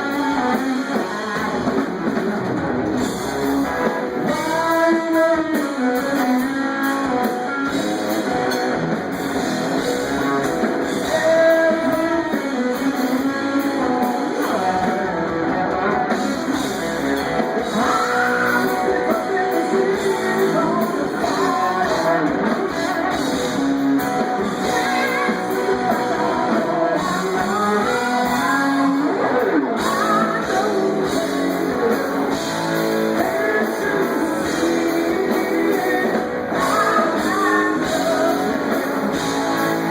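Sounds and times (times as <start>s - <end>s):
person singing lead vocal: 0.0s - 8.9s, 9.8s - 39.9s
bass guitar: 0.0s - 39.9s
drums: 0.0s - 39.9s
electric guitar: 0.0s - 39.9s.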